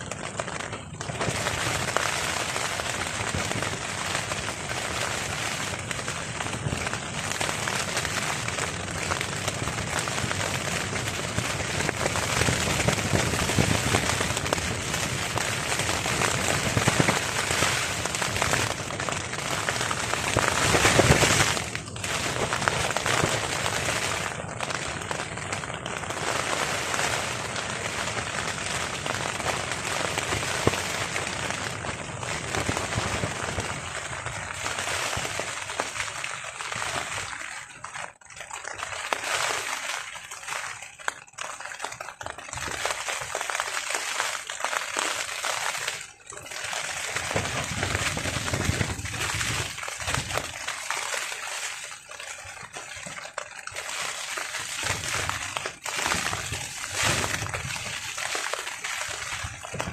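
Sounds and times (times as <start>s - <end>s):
rain beating on a tarp: 0.0s - 59.9s
strong wind: 47.4s - 49.7s.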